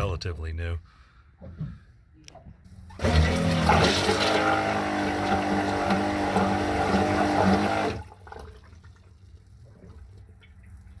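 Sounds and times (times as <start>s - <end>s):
toilet pump motor with rushing water: 2.9s - 8.8s.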